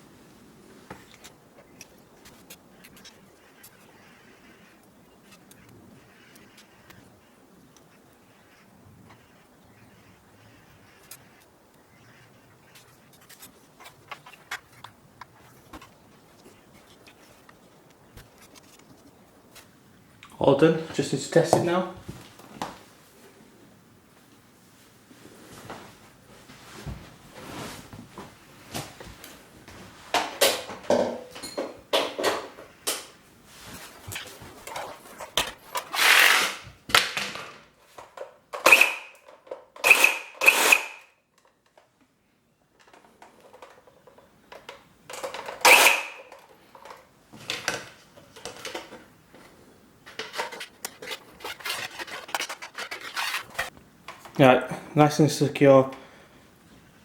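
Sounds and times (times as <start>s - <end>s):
plastic rubbing: 0.9s - 19.7s, 33.5s - 40.8s, 42.8s - 54.5s
squeaky creaks: 33.8s - 36.7s, 50.1s - 53.8s.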